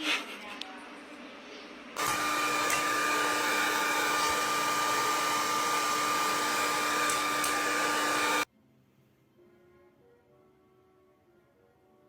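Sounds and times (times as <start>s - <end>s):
small electric motor running: 2.0s - 8.5s.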